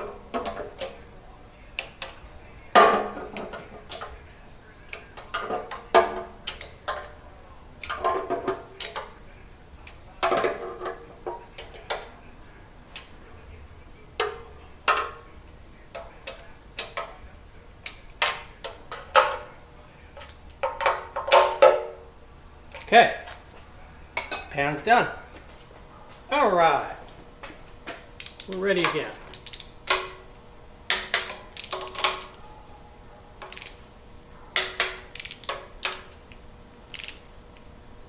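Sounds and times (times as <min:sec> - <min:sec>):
hand ratchet clicking: 0:28.2 - 0:30.2, 0:30.9 - 0:32.4, 0:33.4 - 0:33.8, 0:34.6 - 0:37.7.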